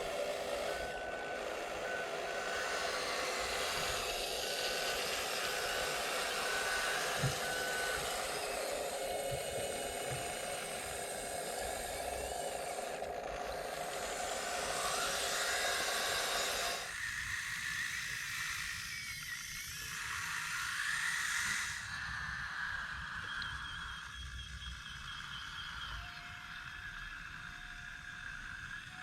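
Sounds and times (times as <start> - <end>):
low whine: 0.0 - 16.9
electric motors whirring: 0.0 - 29.0.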